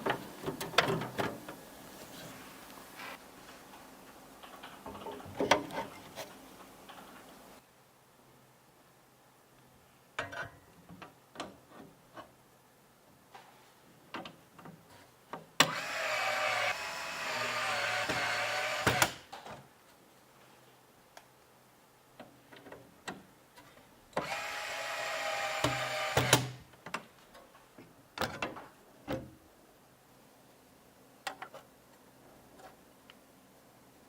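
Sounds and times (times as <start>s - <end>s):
small electric motor running: 15.7s - 19.2s.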